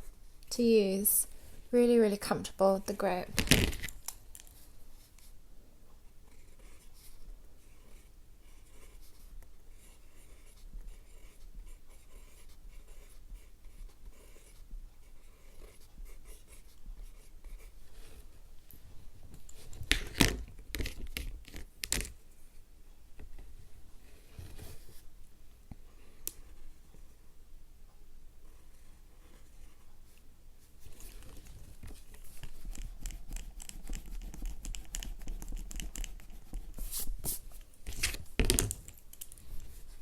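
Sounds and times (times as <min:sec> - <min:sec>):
pencil scratching on paper: 0:06.2 - 0:18.3, 0:30.8 - 0:38.2.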